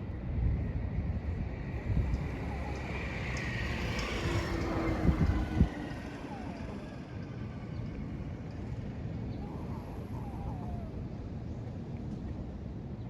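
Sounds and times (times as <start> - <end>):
wind rumbling on microphone: 0.0 - 13.0
vehicle passing: 1.5 - 8.6.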